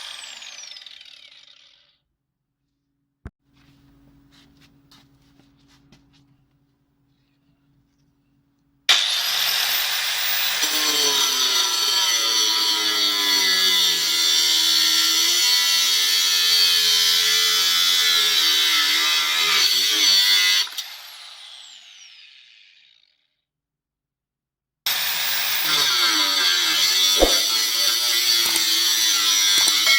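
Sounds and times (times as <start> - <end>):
angle grinder motor whine: 0.0 - 1.8, 24.9 - 29.9.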